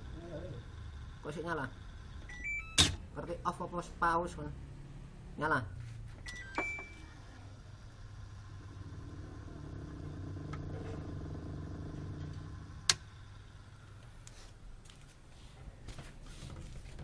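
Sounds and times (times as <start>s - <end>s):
washing machine humming: 0.0s - 3.2s, 6.1s - 17.0s
short panel beep: 6.2s - 7.1s.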